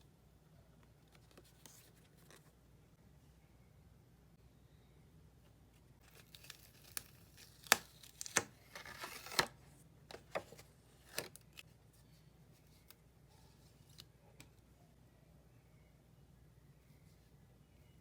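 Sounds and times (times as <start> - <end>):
packaging tearing: 6.0 - 9.5.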